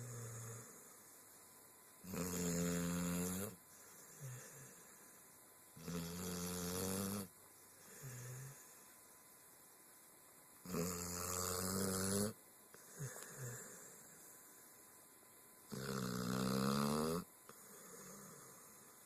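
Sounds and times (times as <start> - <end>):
person snoring: 0.0 - 1.0, 2.0 - 5.1, 5.8 - 8.8, 10.7 - 14.4, 15.7 - 19.0
quiet breathing: 0.0 - 1.9, 3.2 - 5.7, 7.2 - 9.8, 12.7 - 15.1, 17.4 - 19.0.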